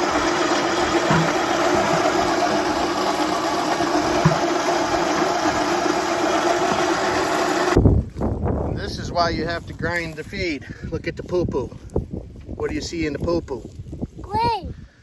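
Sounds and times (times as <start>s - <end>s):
grain mill grinding: 0.0s - 7.8s.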